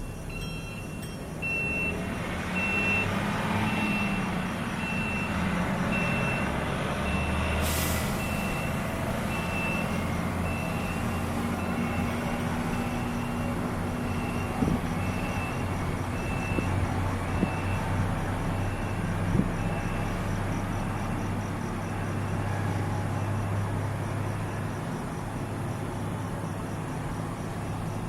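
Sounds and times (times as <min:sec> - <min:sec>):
bus signal beeper: 0:00.0 - 0:21.2
low engine rumble: 0:00.0 - 0:28.0
hiss of air: 0:07.5 - 0:08.4.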